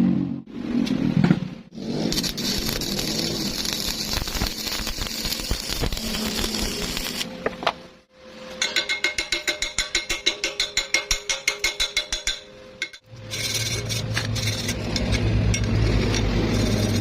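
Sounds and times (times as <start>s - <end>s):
welding arc crackling: 1.7s - 7.4s, 13.4s - 17.0s.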